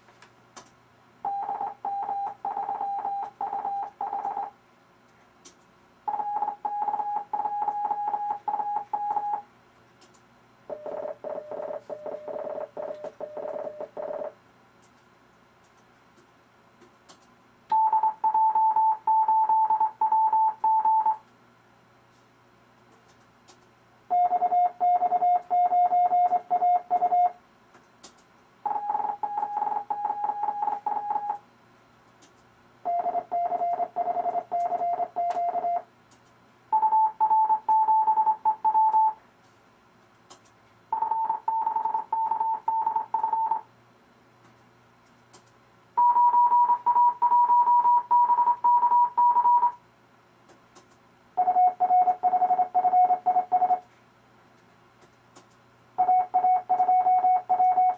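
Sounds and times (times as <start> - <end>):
morse code tone: 1.3 - 4.5, 56.0 - 57.9.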